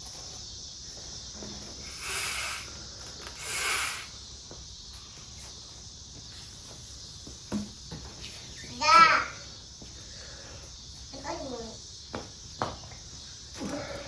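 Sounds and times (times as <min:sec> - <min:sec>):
breaths blown into valve: 0:01.8 - 0:02.8, 0:03.4 - 0:04.2.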